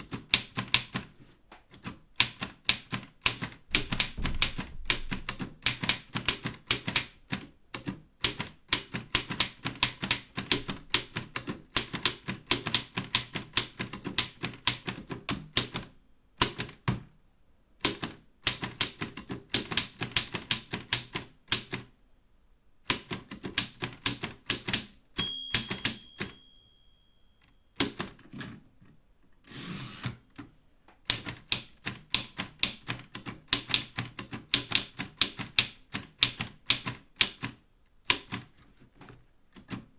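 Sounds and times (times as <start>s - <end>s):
typewriter carriage return: 1.7s - 7.5s, 23.0s - 26.6s, 27.8s - 28.6s
typewriter key strikes: 2.2s - 7.2s, 22.9s - 26.7s
typewriter margin bell: 25.2s - 27.7s.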